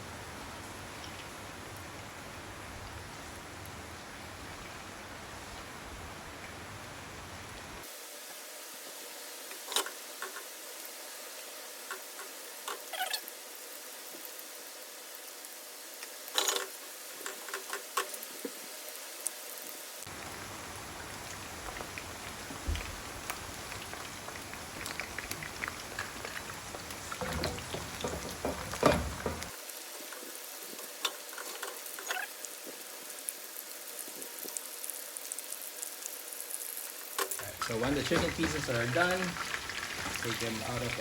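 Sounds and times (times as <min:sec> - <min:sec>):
chicken frying in hot oil: 0:00.0 - 0:41.0
oil popping and crackling: 0:20.0 - 0:41.0.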